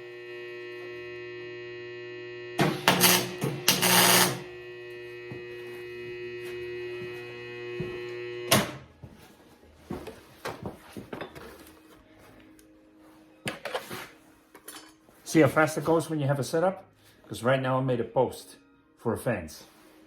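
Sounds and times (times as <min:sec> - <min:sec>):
welding machine humming: 0:00.0 - 0:08.5
arc welding crackle: 0:02.6 - 0:05.0.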